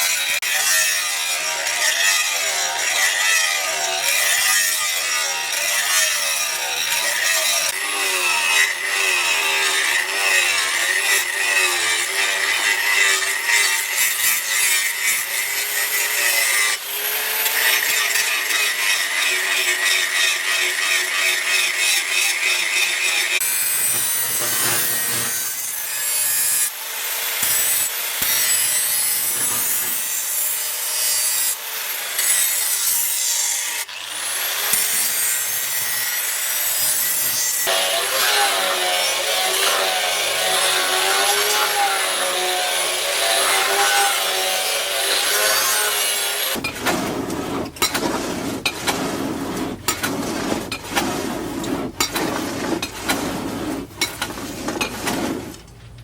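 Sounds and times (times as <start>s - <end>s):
hand tool rasping: 0.0s - 26.8s, 27.4s - 55.7s.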